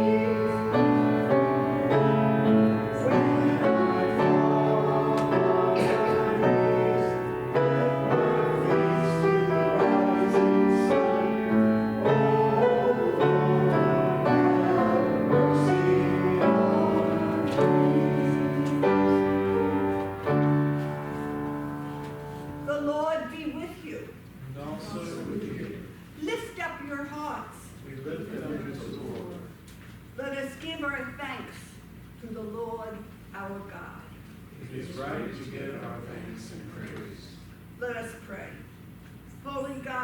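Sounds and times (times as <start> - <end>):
slow keyboard chords: 0.0 - 22.7.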